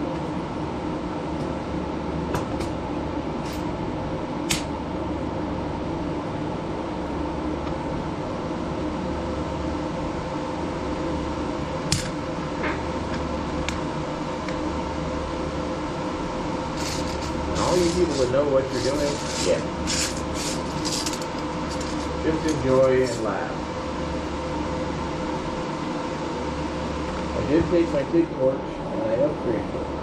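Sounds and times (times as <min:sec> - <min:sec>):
mechanical hum of motor: 0:00.0 - 0:30.0.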